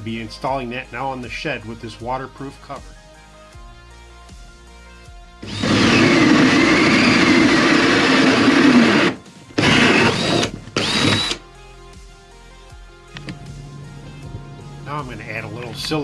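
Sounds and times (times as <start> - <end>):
power drill boring through wall: 5.4 - 11.4.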